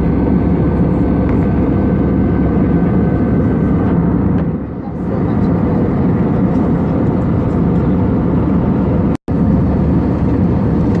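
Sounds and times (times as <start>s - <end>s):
airplane cabin engine noise: 0.0s - 11.0s.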